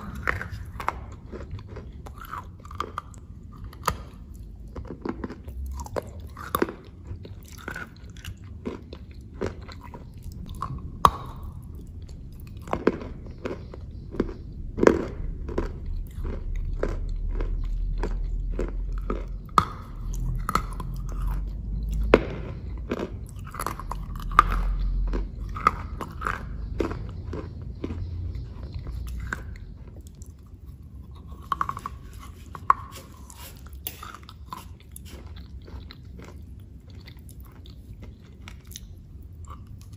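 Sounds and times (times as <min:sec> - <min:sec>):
crunchy pastry chewing: 0:00.0 - 0:39.9
low rumble: 0:00.0 - 0:39.9.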